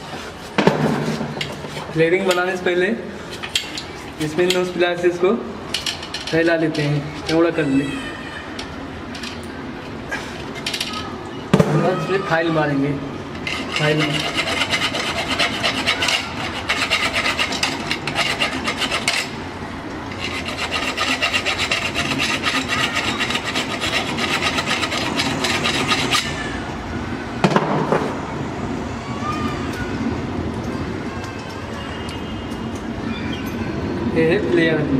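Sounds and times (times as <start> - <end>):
file scraping copper pipe: 13.4 - 19.4, 20.1 - 26.4.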